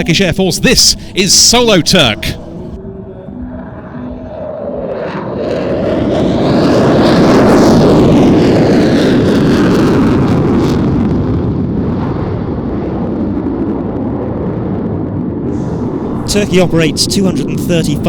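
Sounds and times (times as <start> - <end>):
jet fighter roar passing: 0.0 - 11.5, 15.5 - 18.0.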